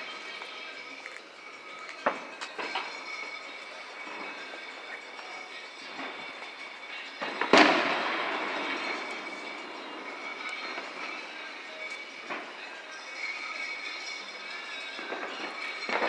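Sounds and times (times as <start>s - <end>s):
faint high whining tones: 0.0s - 16.0s
firework bang echoing: 5.7s - 11.6s, 12.2s - 16.0s.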